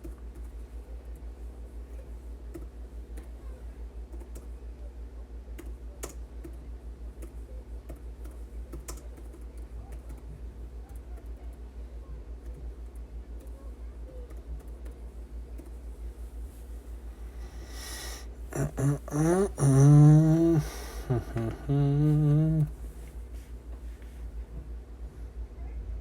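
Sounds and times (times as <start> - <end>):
steady low hum: 0.0 - 26.0
keyboard and mouse clicks: 7.2 - 10.3.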